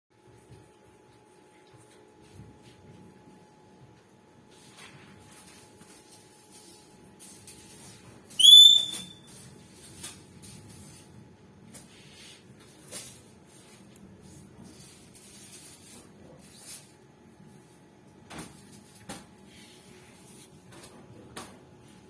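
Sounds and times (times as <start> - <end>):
lovebird high whistled call: 8.4 - 9.3.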